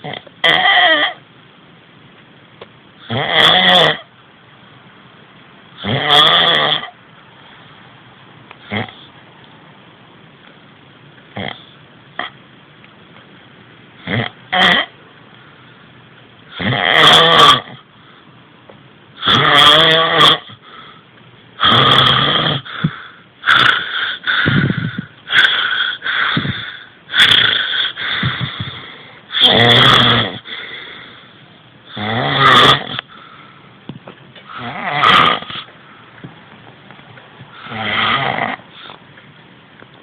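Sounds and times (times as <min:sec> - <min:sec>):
person snoring loudly: 0:03.0 - 0:04.1, 0:05.8 - 0:06.9, 0:08.7 - 0:09.0, 0:14.0 - 0:14.9, 0:16.5 - 0:17.8, 0:19.2 - 0:20.6, 0:21.6 - 0:30.6, 0:31.9 - 0:33.1, 0:34.5 - 0:35.7, 0:37.5 - 0:38.6.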